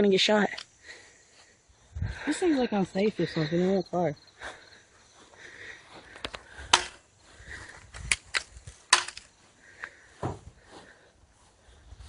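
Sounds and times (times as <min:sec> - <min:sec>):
sharp clicks or snaps: 0:07.9 - 0:09.3.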